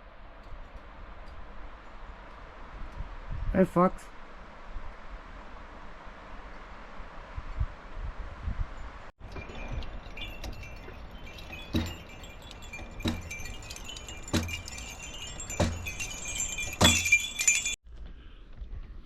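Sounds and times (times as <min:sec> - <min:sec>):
metallic chiming and jingling: 0:09.2 - 0:17.8.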